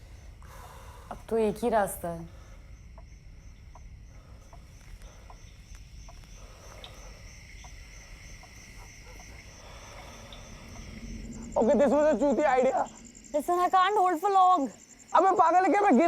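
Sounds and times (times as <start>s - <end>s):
insects chirping: 0.0s - 16.0s
faint ticks: 2.9s - 11.4s.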